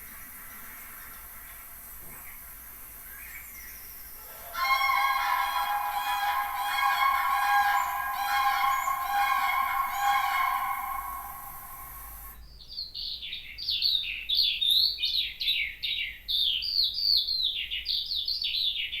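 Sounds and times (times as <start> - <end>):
songbird whistling: 4.4 - 12.3.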